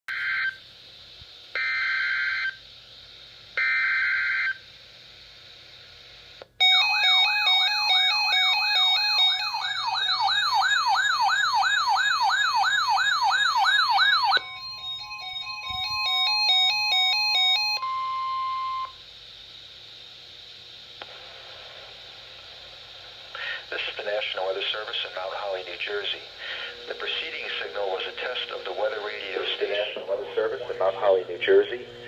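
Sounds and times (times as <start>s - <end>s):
siren-like electronic alarm: 1.6s - 2.6s, 3.6s - 4.6s, 6.6s - 19.0s, 26.5s - 31.2s
steady warning tone: 6.6s - 19.0s, 23.3s - 32.0s
digital data bursts: 23.4s - 31.8s.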